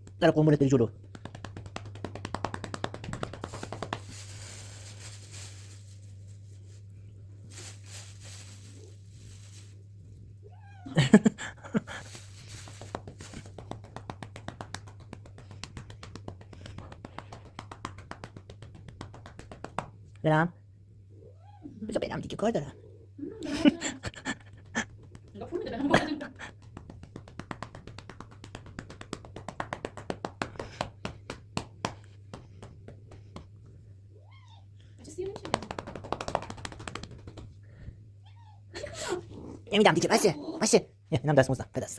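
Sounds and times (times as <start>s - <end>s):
faint low hum: 0.0s - 41.9s
hand patting cat: 0.9s - 6.0s, 11.0s - 20.1s, 24.2s - 33.8s, 35.2s - 37.6s.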